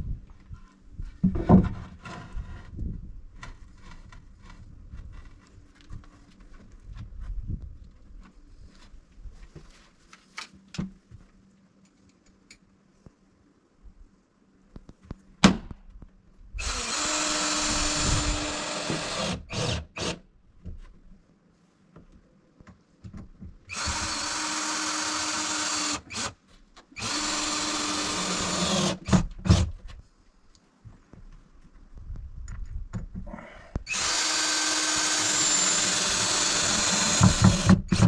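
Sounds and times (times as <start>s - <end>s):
power drill driving screws: 16.6s - 20.2s, 23.7s - 26.4s, 27.0s - 29.7s, 33.9s - 38.0s.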